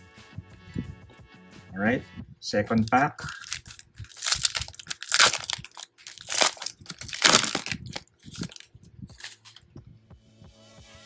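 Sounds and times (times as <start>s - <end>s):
plastic wrapper crinkling and tearing: 2.7s - 9.6s.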